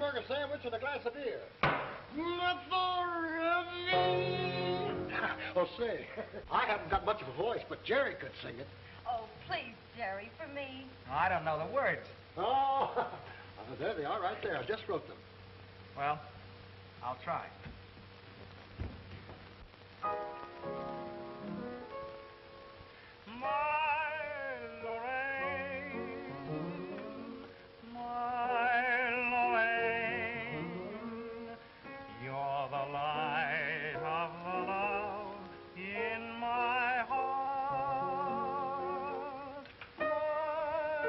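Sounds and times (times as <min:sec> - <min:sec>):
man singing with vibrato: 0:02.1 - 0:05.6, 0:23.2 - 0:41.0.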